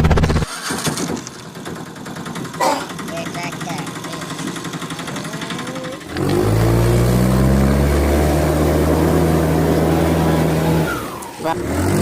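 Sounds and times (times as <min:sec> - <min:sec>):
fast even rattling: 0:00.0 - 0:07.5
vehicle engine running: 0:00.0 - 0:12.0.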